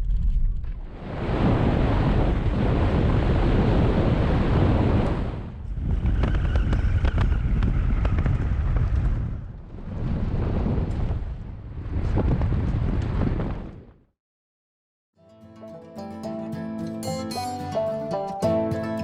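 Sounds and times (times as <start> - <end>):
wind buffeting microphone: 0.0 - 14.1
tyre and road noise: 5.6 - 9.6.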